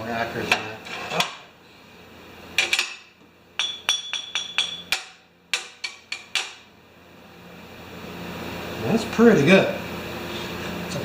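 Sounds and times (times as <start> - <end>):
hammer tapping on metal: 3.6 - 6.6.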